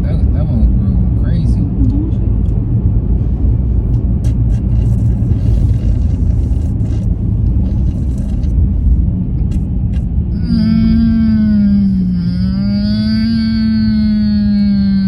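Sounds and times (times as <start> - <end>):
car cabin road noise: 0.0 - 15.0
long held pitched tone: 10.4 - 14.5.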